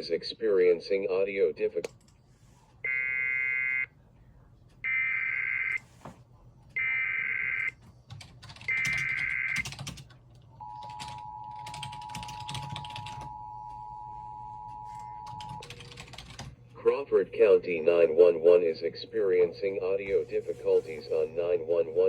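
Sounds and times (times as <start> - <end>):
computer keyboard typing clicks: 7.6 - 13.3, 15.2 - 16.6
steady two-tone attention signal: 10.6 - 15.7.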